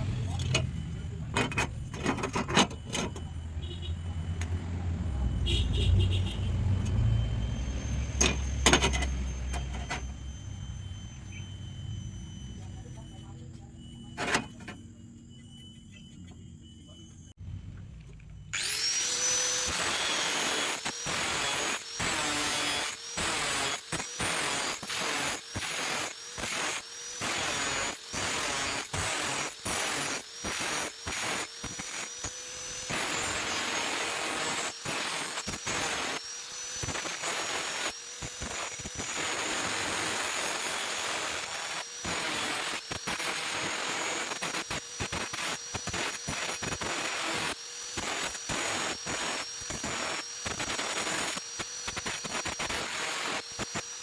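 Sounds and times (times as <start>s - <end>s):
steady high whine: 0.0s - 47.6s
welding arc crackle and hiss: 18.6s - 54.0s.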